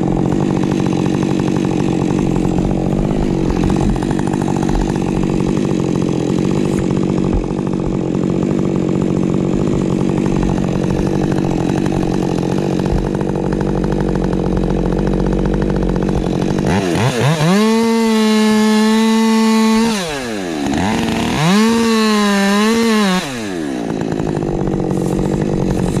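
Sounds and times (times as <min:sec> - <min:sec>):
chainsaw cutting wood: 0:00.0 - 0:26.0
chainsaw revving: 0:00.0 - 0:26.0.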